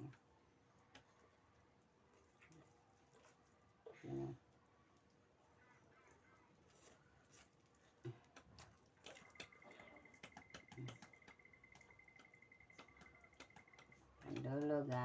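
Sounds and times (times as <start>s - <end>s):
clicks and taps of eating: 0.0s - 1.3s, 7.8s - 15.0s.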